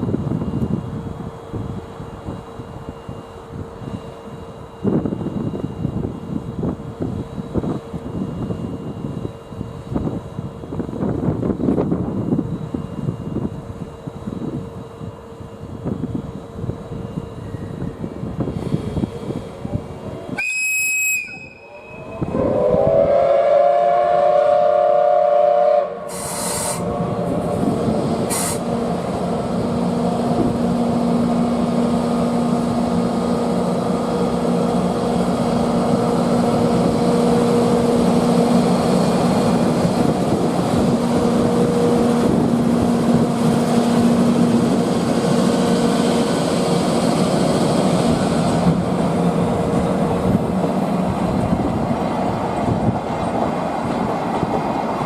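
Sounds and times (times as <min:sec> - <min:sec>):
train rumbling: 0:00.0 - 0:55.0
train whistle: 0:20.4 - 0:27.2.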